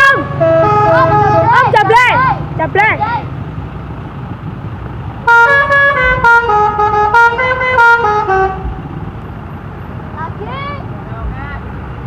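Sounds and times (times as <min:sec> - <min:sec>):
musical truck horn tune: 0:00.0 - 0:02.0, 0:05.2 - 0:09.0.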